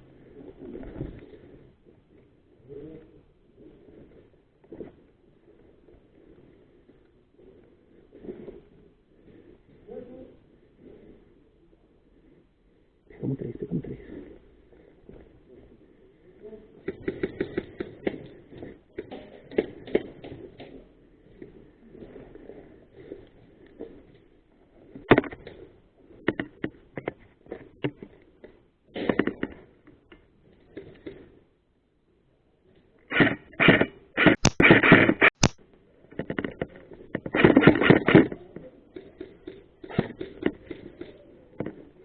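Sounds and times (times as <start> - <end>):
gun and gear clicks: 33.1 - 35.6
sharp cracks: 33.1 - 35.6.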